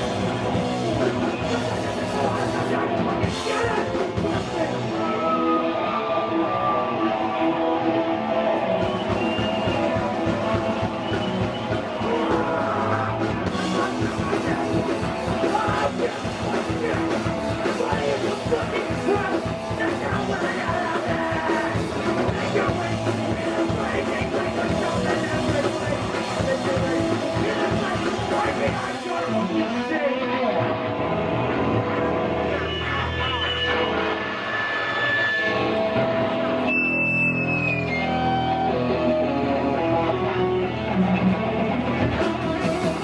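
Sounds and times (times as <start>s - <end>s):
fast drums: 0.0s - 4.9s, 8.7s - 29.3s, 41.9s - 43.0s
shouted vocals: 0.0s - 30.4s
distorted electric guitars: 0.0s - 43.0s.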